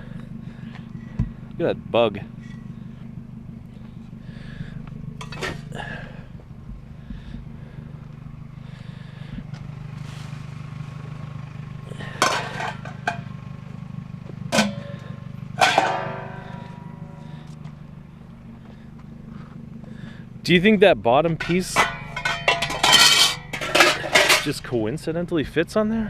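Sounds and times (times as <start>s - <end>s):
vehicle engine idling: 0.0s - 26.0s
metal cookware clanking: 5.2s - 5.6s, 12.0s - 13.3s, 14.5s - 17.2s, 21.4s - 24.6s.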